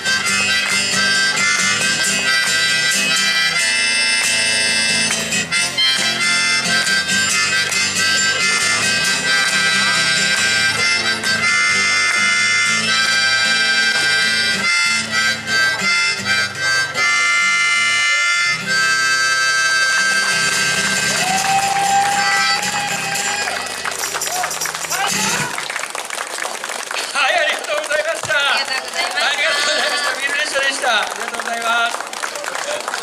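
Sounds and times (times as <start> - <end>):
harmonica melody: 0.0 - 25.5
strummed guitar chords: 0.0 - 25.5.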